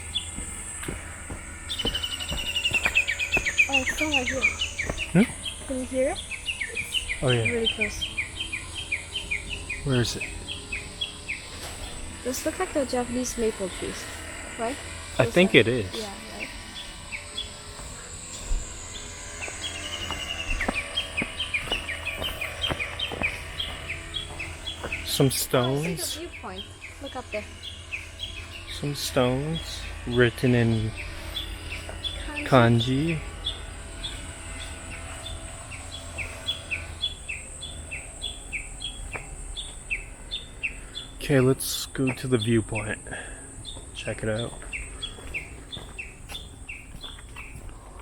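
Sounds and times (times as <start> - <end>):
footsteps: 0.0 - 8.1, 17.2 - 26.1, 43.7 - 48.0
bird chirping: 0.0 - 48.0.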